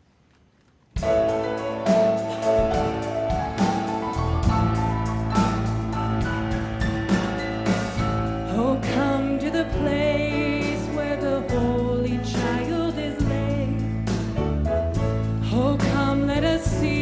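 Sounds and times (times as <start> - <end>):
drum hits: 1.0 - 11.7
sustained instrumental accompaniment: 1.0 - 15.5.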